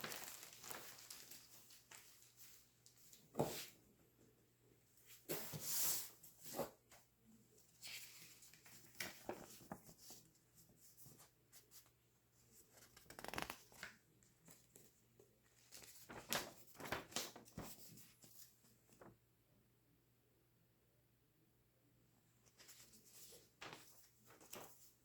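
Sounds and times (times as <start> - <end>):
packaging rustling: 0.0 - 2.1.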